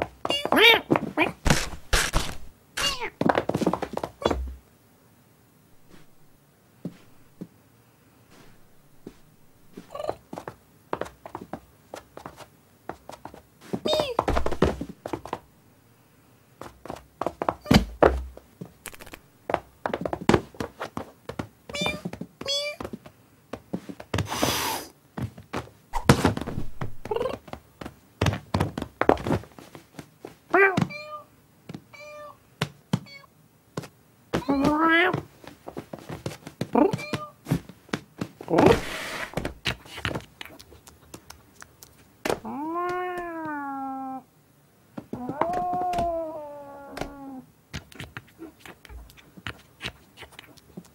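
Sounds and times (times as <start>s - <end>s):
cartoon scuffling: 0.0s - 4.6s, 8.3s - 15.5s, 16.6s - 31.1s, 33.8s - 43.7s, 45.0s - 50.9s
heavy thuds: 17.6s - 18.4s
long drawn-out meow: 42.4s - 44.3s, 45.2s - 47.5s.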